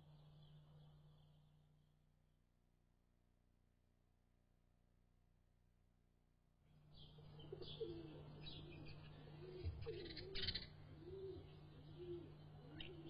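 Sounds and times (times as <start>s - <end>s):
bird cooing: 7.5s - 13.0s.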